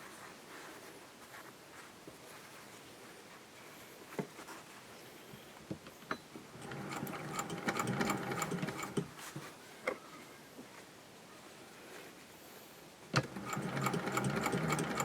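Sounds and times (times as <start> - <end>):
sewing machine stitching: 6.5 - 9.2, 13.2 - 15.0.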